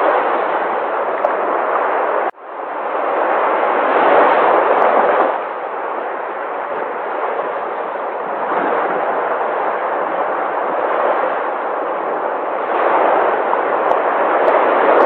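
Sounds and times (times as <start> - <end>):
sea waves breaking: 0.0 - 15.0.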